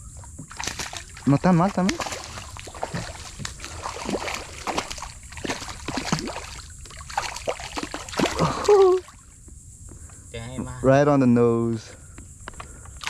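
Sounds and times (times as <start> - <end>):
fish splashing in water: 0.5 - 9.3.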